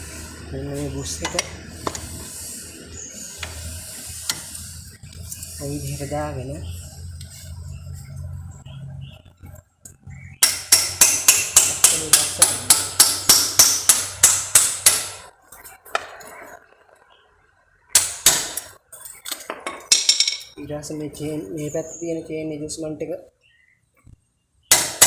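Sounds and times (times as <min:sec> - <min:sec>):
hammer striking metal: 0:10.4 - 0:15.2, 0:17.9 - 0:18.7, 0:24.7 - 0:25.0.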